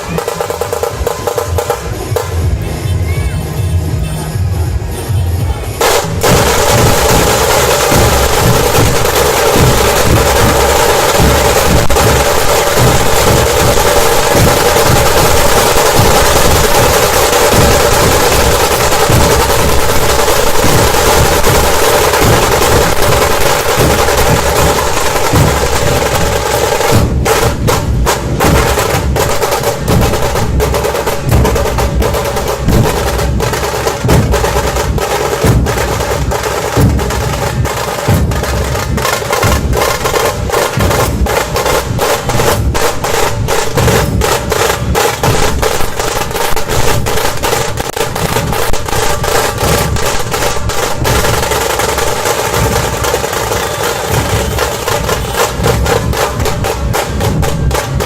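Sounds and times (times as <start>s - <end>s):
big drums beating: 0.0s - 58.0s
drum rolls: 0.0s - 58.0s.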